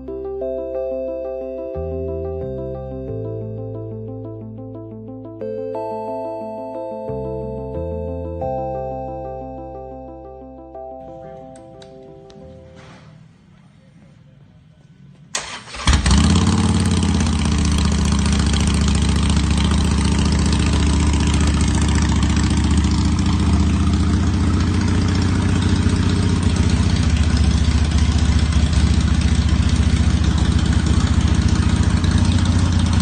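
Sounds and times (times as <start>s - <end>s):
motorcycle engine idling: 15.7s - 33.0s.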